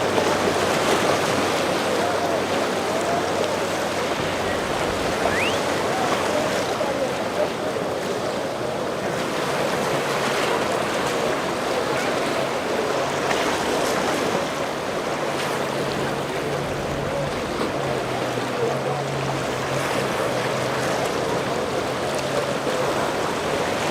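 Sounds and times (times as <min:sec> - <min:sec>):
boat engine humming: 0:00.0 - 0:23.9
rushing breaking water: 0:00.0 - 0:23.9.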